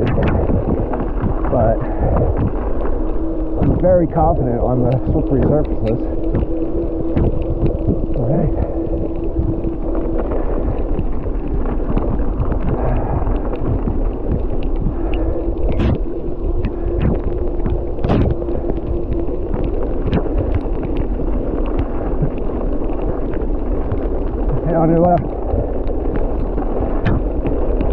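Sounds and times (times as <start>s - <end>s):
bike tyres rolling on snow: 0.0s - 27.9s
wind buffeting microphone: 0.0s - 27.9s.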